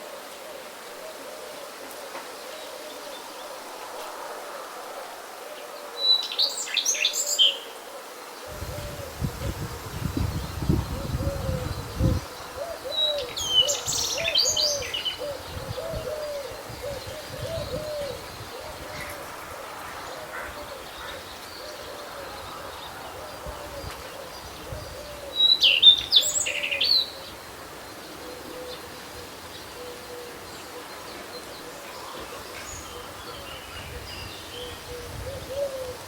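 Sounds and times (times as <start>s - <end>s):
wind rumble: 8.5s - 12.7s, 15.2s - 25.2s.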